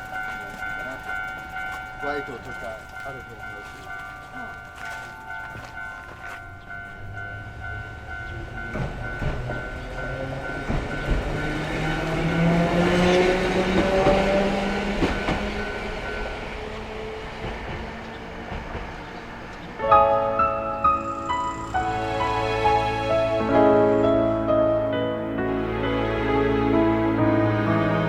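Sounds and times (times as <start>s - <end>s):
crossing warning bell: 0.0s - 28.0s
tram motor whine: 4.4s - 28.0s.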